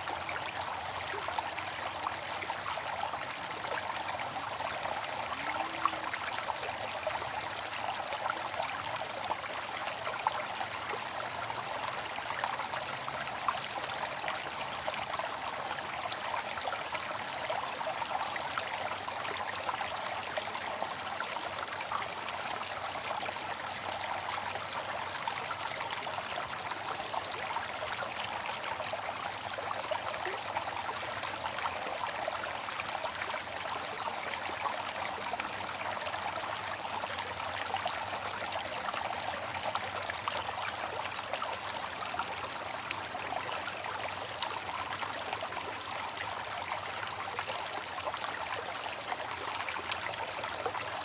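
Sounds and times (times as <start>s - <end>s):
fountain splashing into basin: 0.0s - 7.0s.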